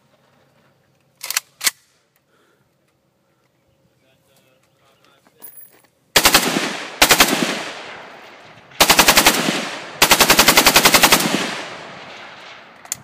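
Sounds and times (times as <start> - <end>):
machine gun bursts: 6.2 - 7.8, 8.8 - 11.7
gunfire echo: 6.2 - 12.9.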